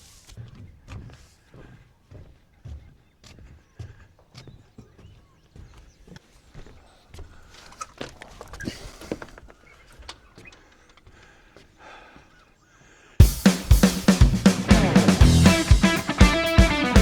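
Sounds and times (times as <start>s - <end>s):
band music with drum kit: 13.2s - 17.0s.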